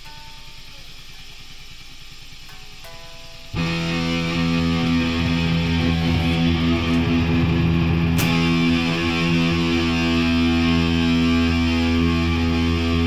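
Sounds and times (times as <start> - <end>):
loud held distorted tones: 0.0 - 13.0
noise hiss: 0.0 - 13.0
low hum: 0.7 - 13.0
sharp hit: 3.6 - 11.3.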